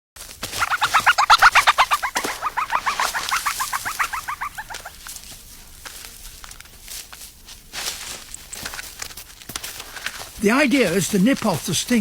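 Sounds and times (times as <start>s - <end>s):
high chirping animal calls: 0.6s - 5.0s
faint rustling: 0.6s - 12.0s.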